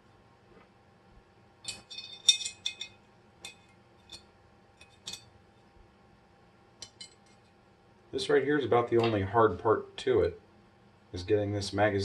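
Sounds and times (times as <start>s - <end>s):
small steel parts clicking: 1.6s - 4.2s, 6.8s - 7.5s.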